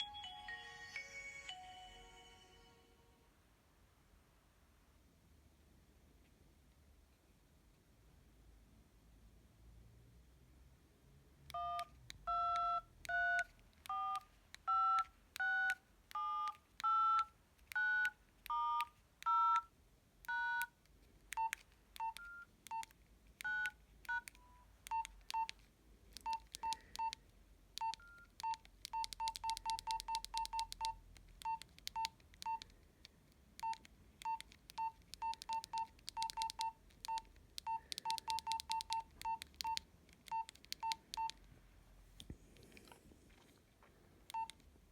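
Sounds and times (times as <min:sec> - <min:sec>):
two-tone keypad beeps: 0:11.5 - 0:19.7, 0:21.4 - 0:25.5, 0:26.2 - 0:27.2, 0:27.8 - 0:32.6, 0:33.6 - 0:41.4, 0:44.3 - 0:44.6
short key beeps with clicks: 0:21.4 - 0:25.6, 0:26.2 - 0:27.2, 0:27.8 - 0:32.7, 0:33.6 - 0:41.4, 0:44.3 - 0:44.6.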